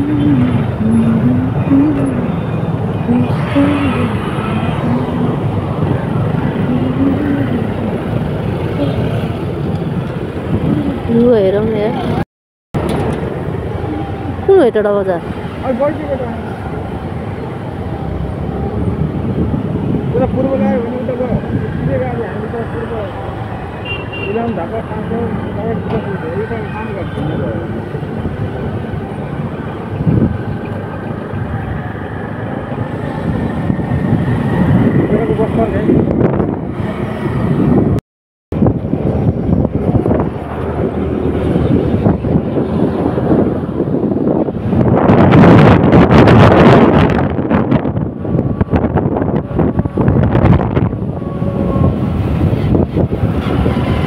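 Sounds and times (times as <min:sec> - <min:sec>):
vehicle engine and road rumble: 0:00.0 - 0:12.2, 0:12.8 - 0:54.0.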